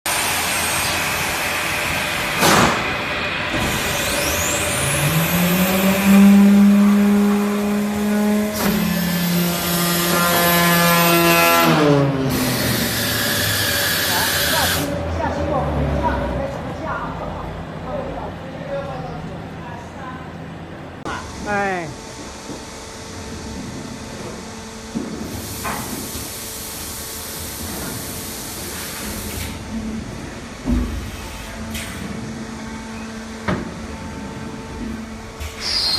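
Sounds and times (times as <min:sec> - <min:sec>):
molding machine humming: 0:00.1 - 0:15.1
machine motor whine and hum: 0:00.1 - 0:15.2, 0:20.6 - 0:35.9
machine clunk: 0:02.4 - 0:03.8
loud hiss of air: 0:25.2 - 0:29.6.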